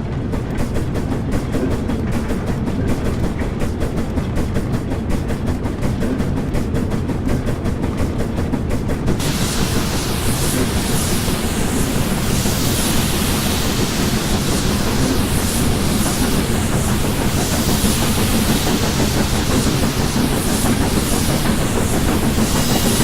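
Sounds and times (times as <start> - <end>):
train wheels rushing on rails: 0.0 - 23.0
steam hiss: 9.0 - 23.0.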